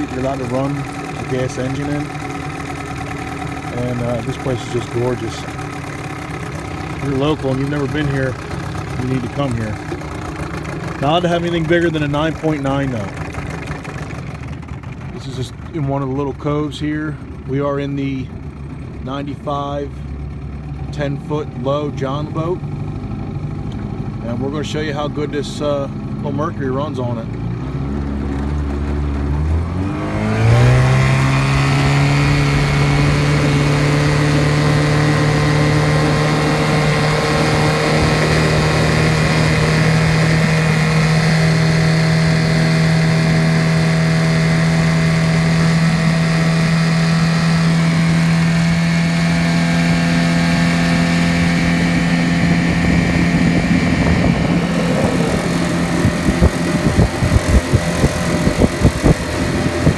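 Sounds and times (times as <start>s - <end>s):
outboard motor running: 0.0s - 59.9s
irregular thumps: 54.0s - 59.9s.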